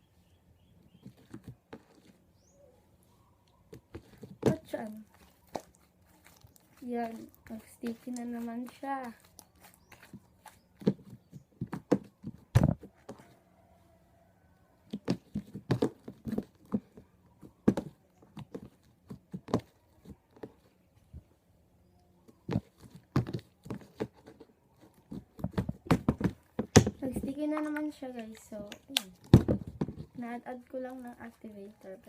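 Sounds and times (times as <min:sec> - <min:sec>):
sticky slime squelches: 0:03.4 - 0:13.0, 0:30.0 - 0:32.0.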